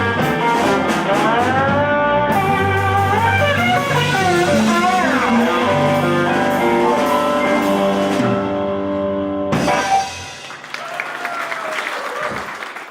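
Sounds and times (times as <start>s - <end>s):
live blues band: 0.0s - 11.5s
applause: 10.4s - 12.9s.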